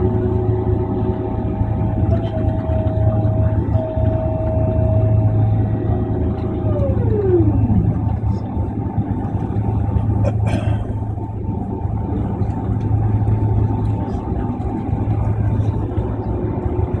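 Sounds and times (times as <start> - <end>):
aircraft cabin hum: 0.0 - 17.0
whining tone dropping in pitch: 2.2 - 10.1.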